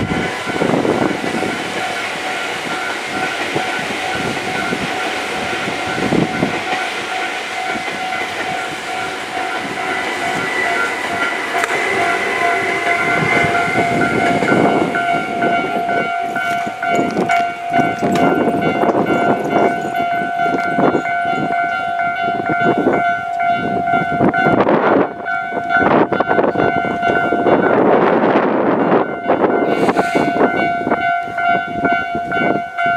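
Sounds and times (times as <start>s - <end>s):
train wheels knocking over rail joints: 0.0s - 21.6s
level-crossing alarm ringing: 0.0s - 32.9s.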